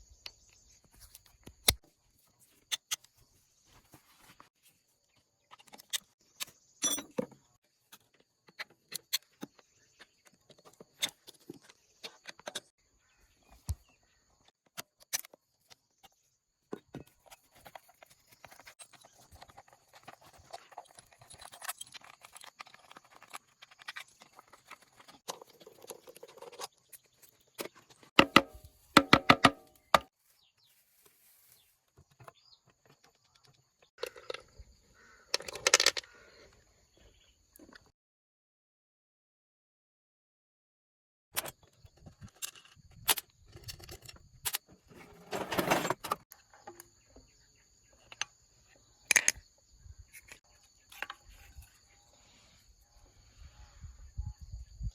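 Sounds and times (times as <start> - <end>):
hand tools clicking and knocking: 16.8 - 30.1
metal engine parts being handled: 42.1 - 46.2.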